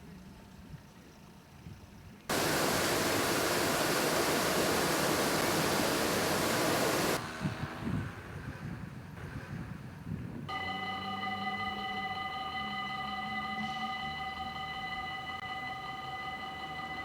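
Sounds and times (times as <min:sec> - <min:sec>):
steady rushing hiss: 0:02.3 - 0:10.0.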